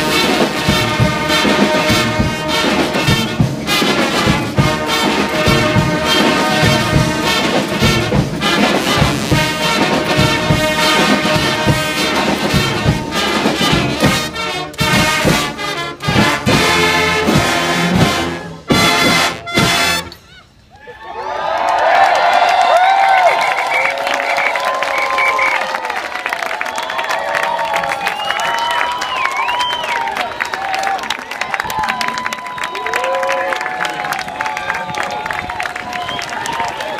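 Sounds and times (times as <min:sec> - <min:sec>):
brass street band playing: 0:00.0 - 0:20.3.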